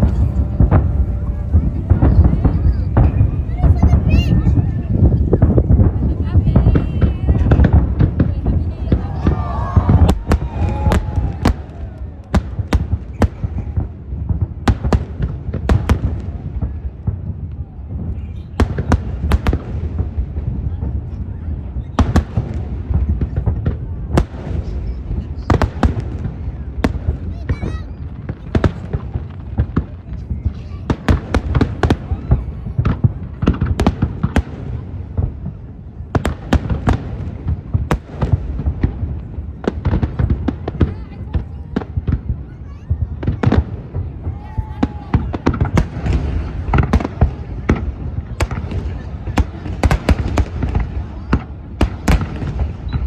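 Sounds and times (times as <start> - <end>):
low rumble: 0.0 - 12.3
fireworks bangs: 0.0 - 53.0
low rumble of fireworks bursts: 0.0 - 53.0.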